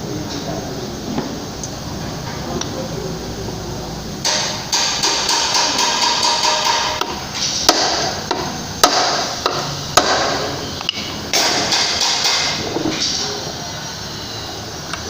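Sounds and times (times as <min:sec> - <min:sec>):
steady background hiss: 0:00.0 - 0:15.0
hammer striking metal: 0:04.2 - 0:12.6.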